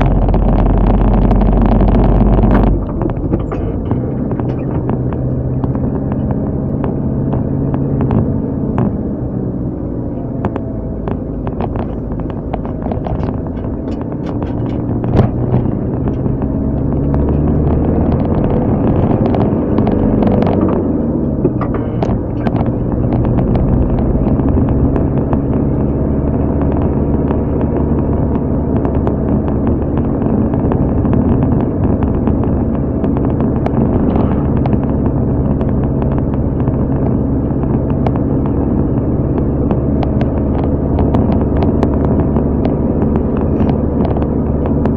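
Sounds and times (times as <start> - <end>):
car engine and road noise: 0.0 - 44.9.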